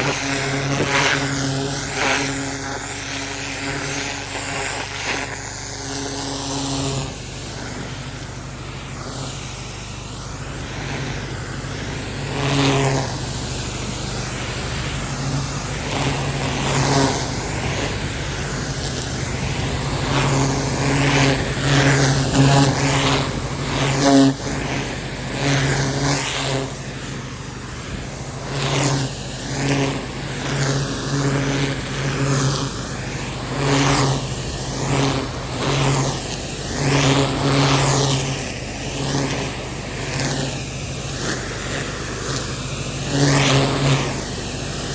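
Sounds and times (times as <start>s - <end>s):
pressure washer engine running: 0.0s - 44.9s.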